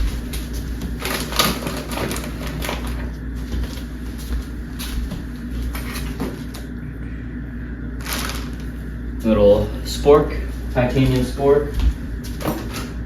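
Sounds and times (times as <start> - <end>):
food packets rustling: 0.0 - 4.9, 8.0 - 8.9.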